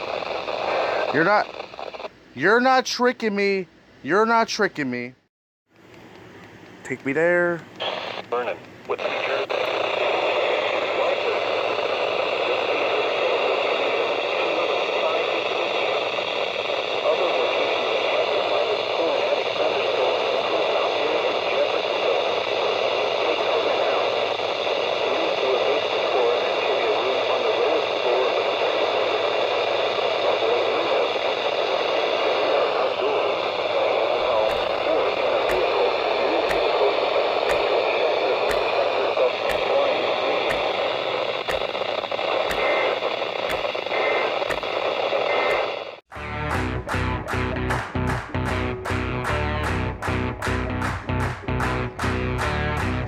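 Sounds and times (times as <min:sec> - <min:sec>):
radio static hiss: 0:00.0 - 0:05.1, 0:06.8 - 0:46.1
faint clicks: 0:40.4 - 0:45.7
plucked guitar music: 0:46.1 - 0:53.0.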